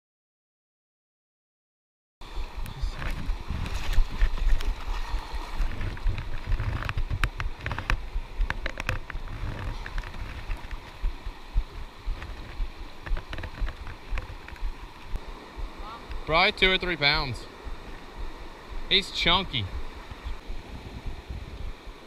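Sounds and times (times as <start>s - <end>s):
wind rumbling on microphone: 2.2s - 22.0s
sharp clicks and knocks: 5.8s - 10.8s, 12.1s - 15.2s.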